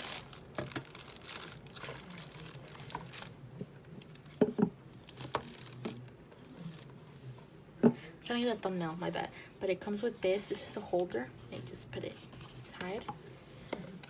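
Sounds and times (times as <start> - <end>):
packaging crinkling: 0.0 - 3.4, 5.0 - 5.8.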